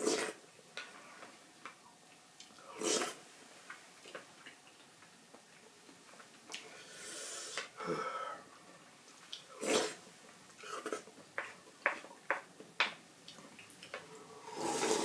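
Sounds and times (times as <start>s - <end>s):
person slurping: 0.0s - 0.4s, 2.6s - 3.2s, 6.8s - 8.1s, 9.5s - 10.0s, 14.3s - 15.0s.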